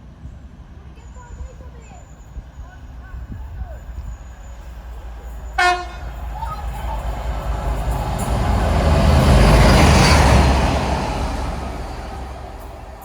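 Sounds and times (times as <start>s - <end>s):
train rumbling past: 0.0s - 13.0s
train horn: 5.5s - 11.8s.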